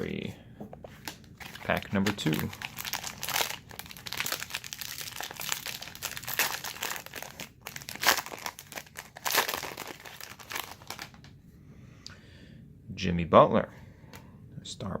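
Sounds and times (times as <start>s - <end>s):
plastic wrapper crinkling: 1.0s - 11.3s.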